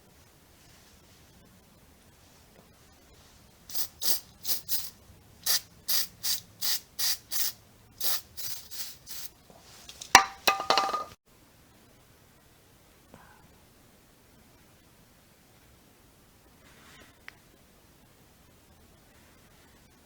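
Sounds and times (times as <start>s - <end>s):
short hissing bursts: 3.7s - 9.4s.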